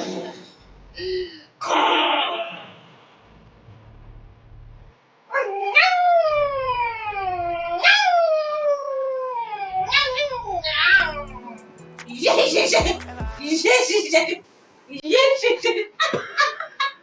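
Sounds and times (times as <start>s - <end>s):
dog-like howl: 5.3s - 11.3s.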